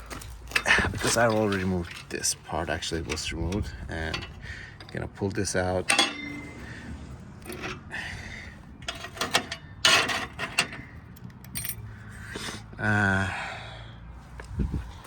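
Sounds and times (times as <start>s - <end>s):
metal parts clinking and scraping: 0.0s - 7.9s, 8.5s - 11.9s.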